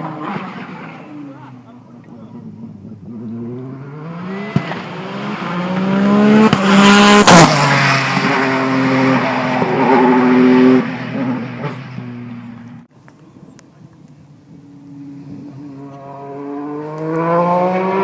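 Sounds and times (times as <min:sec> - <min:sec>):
race car engine accelerating: 0:02.0 - 0:12.9, 0:15.0 - 0:18.0.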